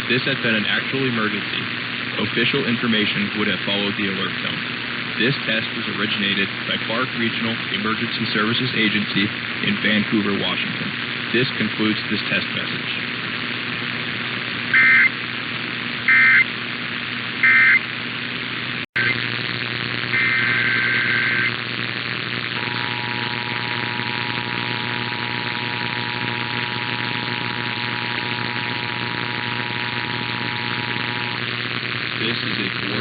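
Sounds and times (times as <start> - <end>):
radio hiss: 0.0 - 33.0
shrill warbling data bursts: 20.1 - 21.5.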